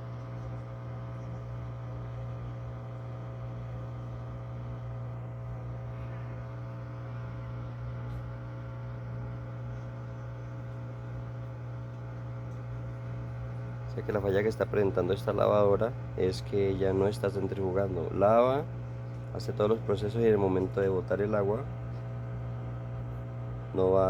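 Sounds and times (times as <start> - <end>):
washing machine humming: 0.0 - 24.0.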